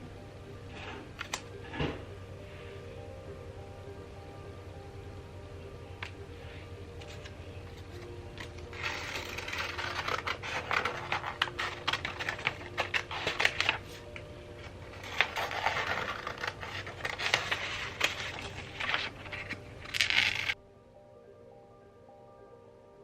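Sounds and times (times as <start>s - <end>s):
hands handling small objects: 7.0s - 20.6s.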